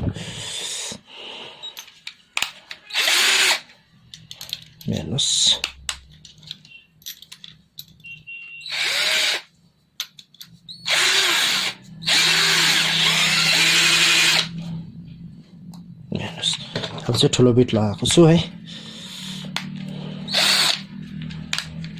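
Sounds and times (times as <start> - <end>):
cordless drill motor: 2.9 - 3.6, 8.6 - 9.5, 10.7 - 14.5, 20.2 - 21.5
drill trigger clicks: 20.3 - 20.9.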